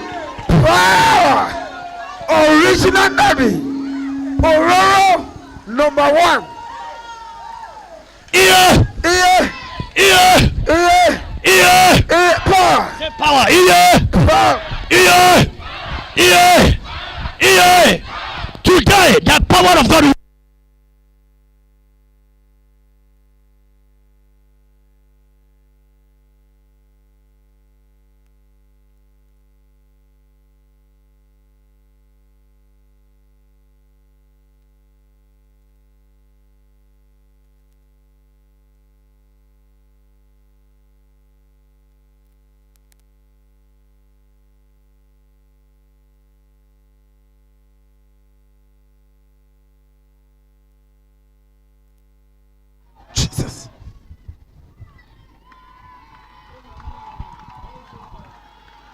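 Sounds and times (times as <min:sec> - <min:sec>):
faint tick: 0:28.2 - 0:29.4, 0:41.8 - 0:43.1.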